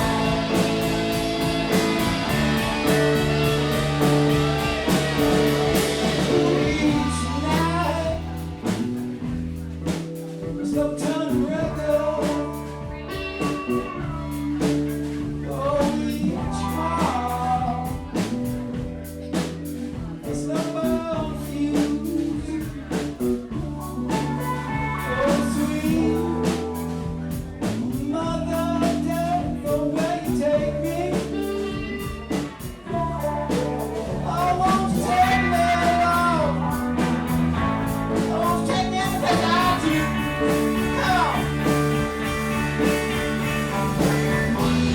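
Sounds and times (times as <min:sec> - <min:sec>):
slide guitar lead: 0:00.0 - 0:09.8, 0:11.5 - 0:15.6, 0:30.3 - 0:44.9
drums: 0:00.0 - 0:44.9
electric bass: 0:00.0 - 0:44.9.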